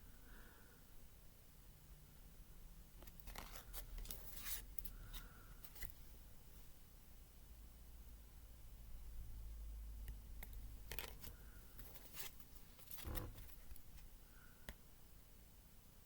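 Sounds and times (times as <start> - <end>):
faint low hum: 0.0 - 16.0
cards sliding and tapping: 3.0 - 6.0, 10.4 - 14.1.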